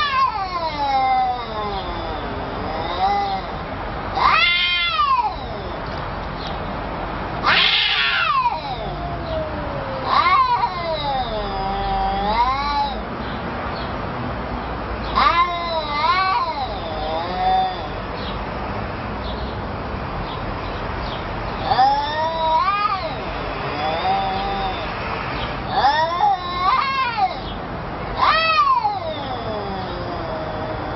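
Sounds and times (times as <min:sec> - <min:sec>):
cat yowling: 0:00.0 - 0:06.0, 0:07.4 - 0:13.1, 0:15.1 - 0:18.0, 0:21.6 - 0:30.9.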